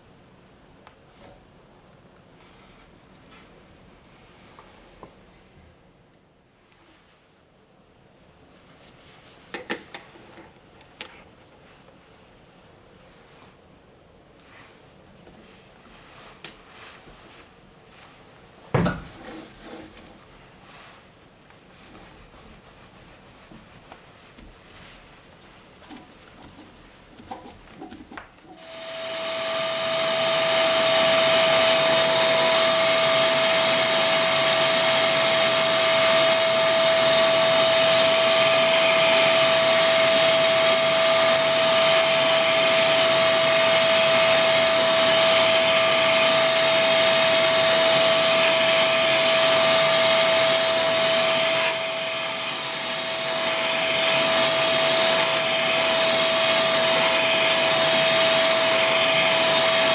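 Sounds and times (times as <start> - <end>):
grinder motor whining: 28.6 - 59.9.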